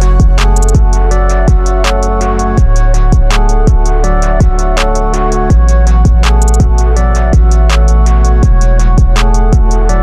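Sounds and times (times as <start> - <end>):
background music with beat: 0.0 - 10.0
deep kick drum hits: 2.6 - 4.7, 5.5 - 7.7.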